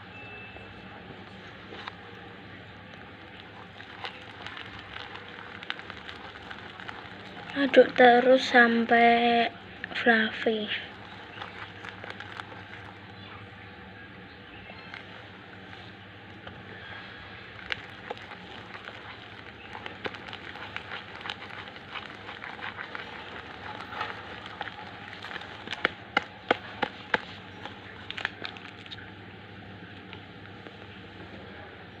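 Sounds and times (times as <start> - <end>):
sticky slime clicks and crackles: 2.9 - 8.8, 9.8 - 13.3, 14.7 - 15.4, 17.5 - 29.1.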